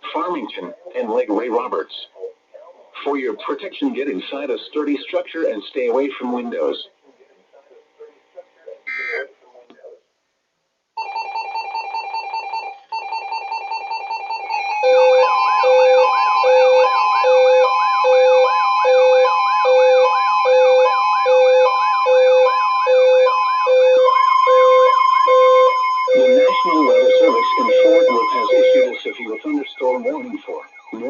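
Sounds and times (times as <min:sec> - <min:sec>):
alternating low and high beeps: 0:11.0 - 0:31.0
rapidly pulsing beep tone: 0:11.0 - 0:31.0
warbling siren sweeps: 0:14.7 - 0:31.0.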